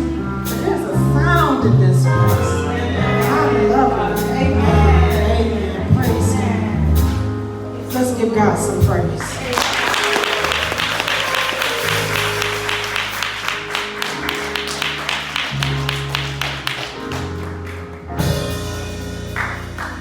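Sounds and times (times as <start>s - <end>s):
fast percussive beat: 9.5s - 20.0s.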